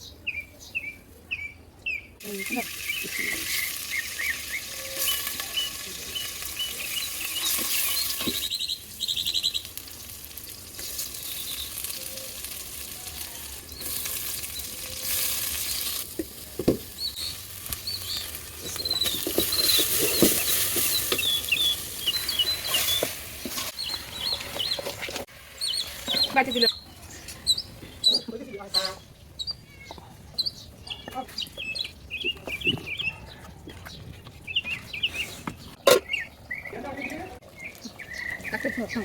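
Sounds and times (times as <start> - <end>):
birds chirping: 0.0 - 39.0
food sizzling in oil: 2.2 - 26.8.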